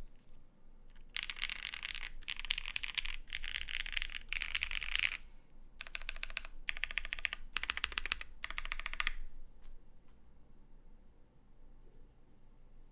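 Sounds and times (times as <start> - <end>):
mechanical keyboard typing: 0.9 - 5.2, 5.8 - 9.2.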